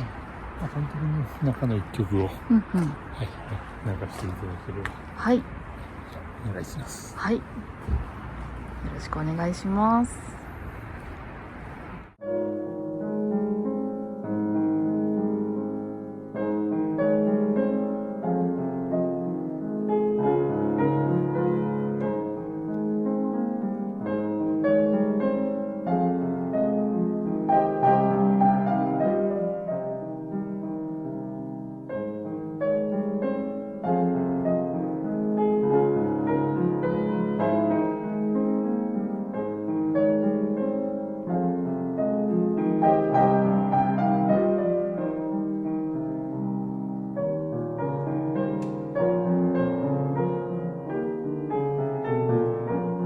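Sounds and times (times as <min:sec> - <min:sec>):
slow solo piano piece: 0:10.8 - 0:53.0.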